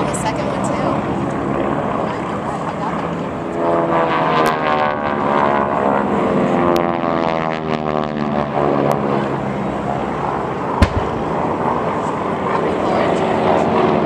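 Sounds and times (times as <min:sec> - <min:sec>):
propeller plane flying past: 0:00.0 - 0:14.0.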